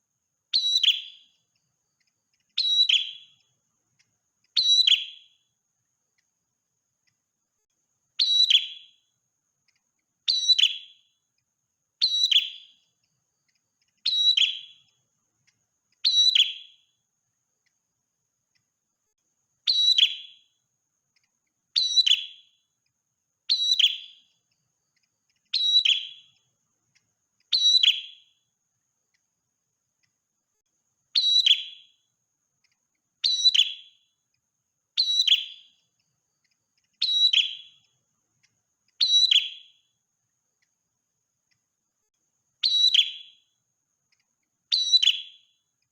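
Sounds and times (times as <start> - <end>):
songbird calling sharp high notes: 0.5 - 1.4, 2.4 - 3.5, 4.5 - 5.4, 8.2 - 9.0, 10.3 - 11.1, 12.0 - 12.9, 13.8 - 15.0, 16.0 - 16.9, 19.6 - 20.5, 21.7 - 22.6, 23.5 - 24.4, 25.3 - 26.5, 27.4 - 28.4, 31.1 - 32.0, 33.2 - 34.1, 35.0 - 35.9, 36.9 - 38.0, 38.9 - 39.9, 42.6 - 43.5, 44.7 - 45.6.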